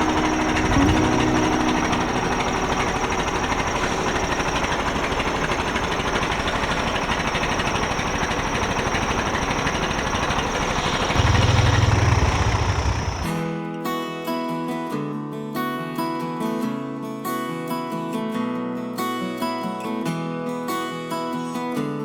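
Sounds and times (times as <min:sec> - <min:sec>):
vehicle engine chugging: 0:00.0 - 0:13.6.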